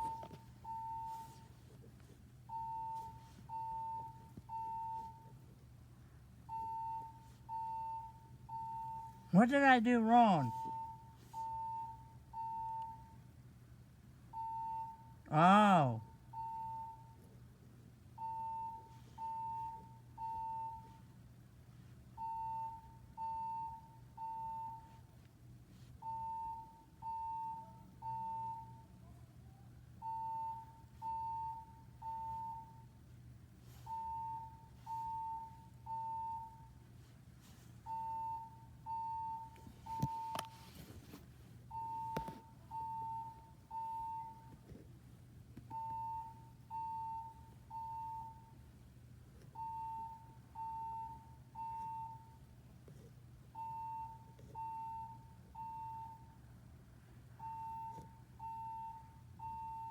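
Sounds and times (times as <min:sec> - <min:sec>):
fire alarm beeping: 0:00.0 - 0:01.4, 0:02.5 - 0:05.3, 0:06.5 - 0:13.2, 0:14.3 - 0:17.2, 0:18.2 - 0:21.0, 0:22.2 - 0:25.0, 0:26.0 - 0:28.8, 0:30.0 - 0:32.9, 0:33.9 - 0:36.7, 0:37.9 - 0:40.7, 0:41.7 - 0:44.5, 0:45.7 - 0:48.5, 0:49.6 - 0:52.4, 0:53.6 - 0:56.4, 0:57.4 - 0:59.9.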